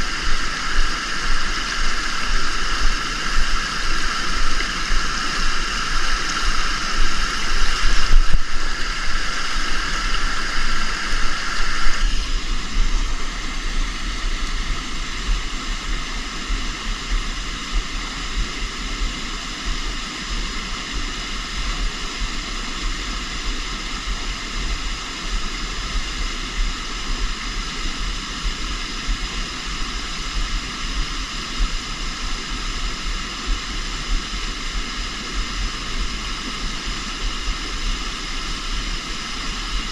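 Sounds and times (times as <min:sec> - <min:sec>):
river water rushing: 0:00.0 - 0:30.3.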